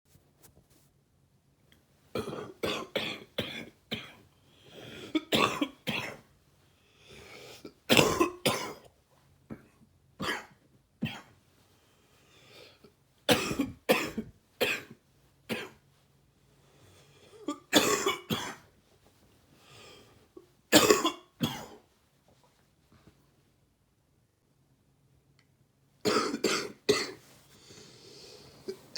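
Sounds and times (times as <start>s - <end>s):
man coughing wetly: 2.2s - 4.2s, 5.1s - 6.2s, 7.9s - 8.8s, 10.2s - 11.3s, 13.3s - 14.9s, 17.5s - 18.6s, 20.7s - 21.8s, 26.0s - 27.2s.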